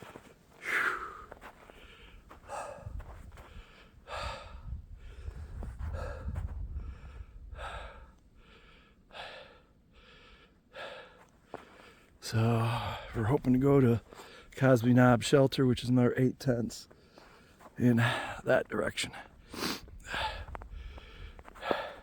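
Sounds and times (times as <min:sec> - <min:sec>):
person breathing hard: 0:00.5 - 0:13.2, 0:19.4 - 0:22.0.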